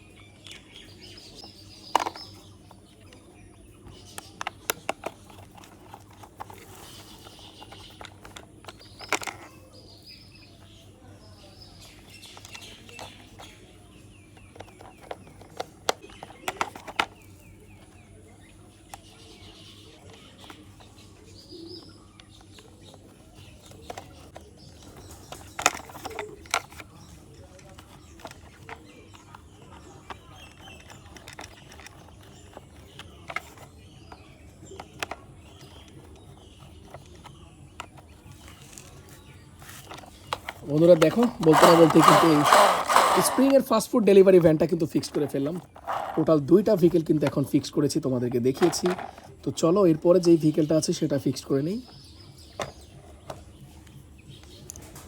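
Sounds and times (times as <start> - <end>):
birds chirping faintly: 0.0 - 55.0
plastic toy parts clicking: 1.4 - 9.6, 11.8 - 18.1, 22.2 - 52.0, 54.4 - 55.0
screwdriver driving screws: 40.8 - 43.6.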